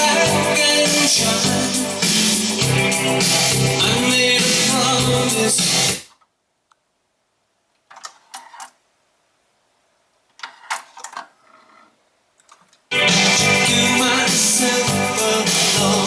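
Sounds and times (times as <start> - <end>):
music from cassette deck: 0.0 - 6.1, 12.9 - 16.0.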